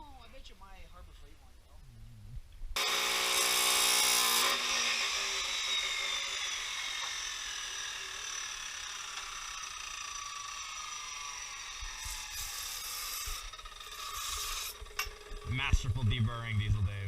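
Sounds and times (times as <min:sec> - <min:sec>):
grinder cutting metal: 0:02.8 - 0:15.5
grinder spinning down whine: 0:02.8 - 0:16.9.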